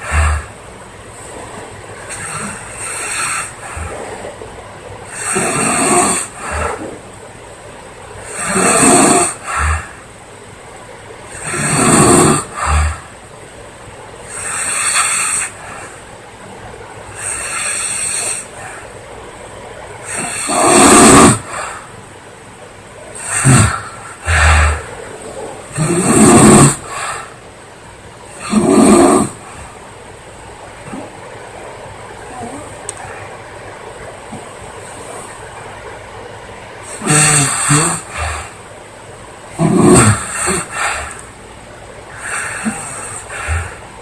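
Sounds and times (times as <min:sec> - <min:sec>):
woman snoring raspingly: 0:00.0 - 0:00.6, 0:02.1 - 0:04.0, 0:05.1 - 0:06.8, 0:08.2 - 0:10.0, 0:11.3 - 0:13.1, 0:20.1 - 0:21.7, 0:23.2 - 0:24.9, 0:25.7 - 0:27.2, 0:28.4 - 0:29.4, 0:36.9 - 0:38.6, 0:39.6 - 0:41.2, 0:42.2 - 0:43.8.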